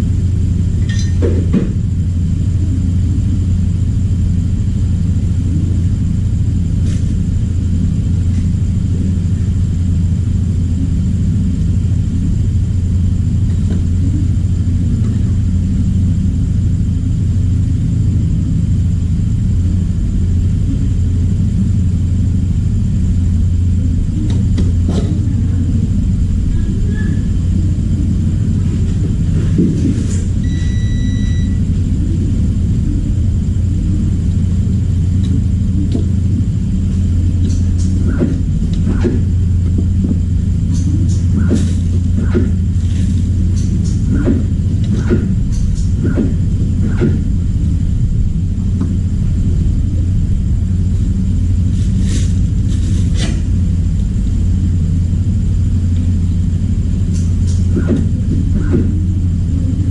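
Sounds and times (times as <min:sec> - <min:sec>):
low rumble: 0:00.0 - 0:59.9
short electronic beep: 0:30.4 - 0:31.7.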